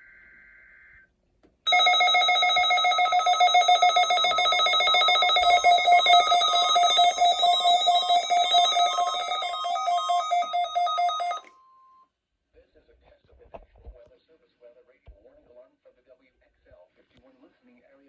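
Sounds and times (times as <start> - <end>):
pulsing electronic alarm tone: 1.7 - 11.4.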